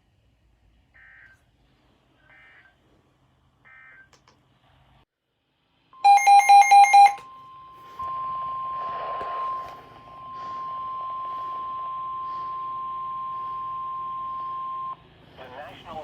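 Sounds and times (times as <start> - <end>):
steady high alarm tone: 6.0 - 15.0
quick loud beeps: 6.1 - 7.2.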